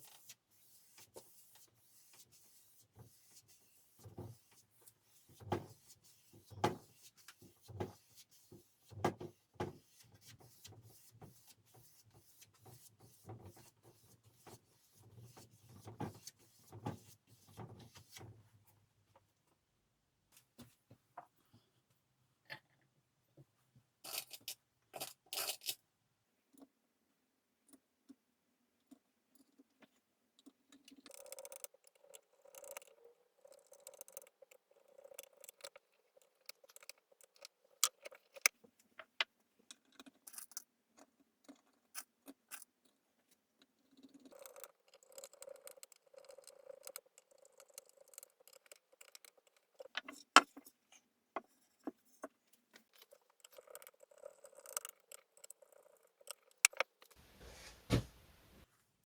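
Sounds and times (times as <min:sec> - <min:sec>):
light rubbing or scraping: 0:56.7 - 0:58.6.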